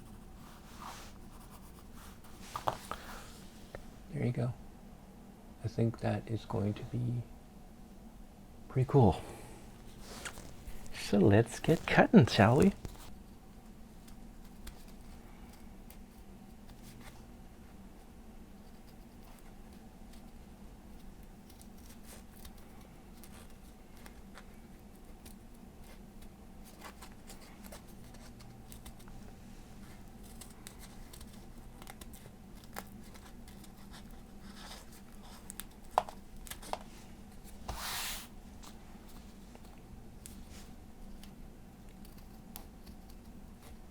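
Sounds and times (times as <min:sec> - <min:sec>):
paper rustling: 0:00.0 - 0:03.9, 0:09.8 - 0:13.2, 0:26.6 - 0:43.8
scissors snipping paper: 0:20.9 - 0:36.8, 0:41.0 - 0:43.9.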